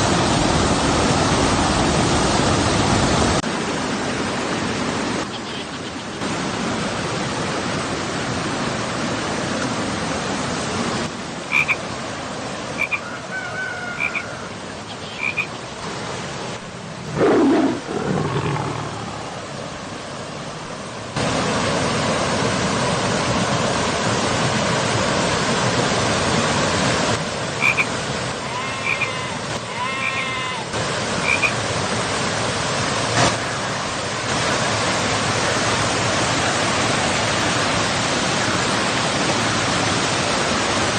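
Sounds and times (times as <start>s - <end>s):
river water rushing over rocks: 0.0s - 13.0s, 14.0s - 40.9s
short high chirping calls: 28.8s - 29.2s.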